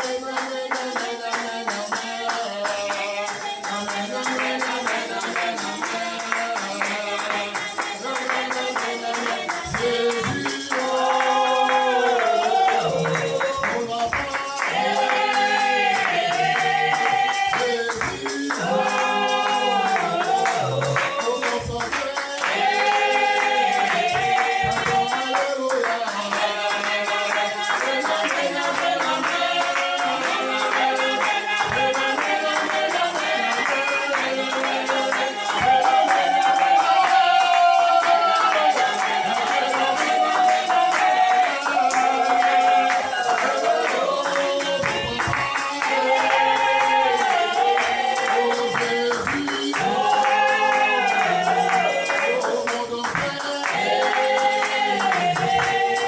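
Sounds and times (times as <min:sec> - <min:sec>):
light percussion beat: 0:00.0 - 0:56.0
worship song singing: 0:00.0 - 0:56.0.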